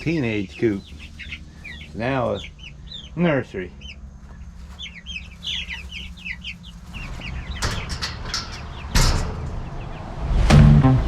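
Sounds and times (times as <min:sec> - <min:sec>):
chicks peeping: 0:00.0 - 0:10.3
rustling and scuffling: 0:04.1 - 0:08.8.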